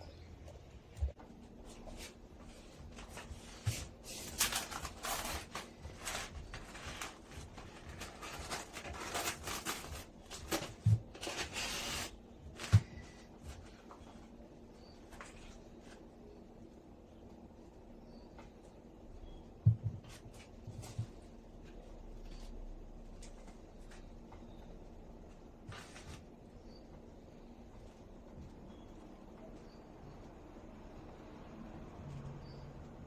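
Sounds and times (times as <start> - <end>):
rustling and scraping handling: 1.0 - 16.5, 19.6 - 24.6, 25.2 - 28.2.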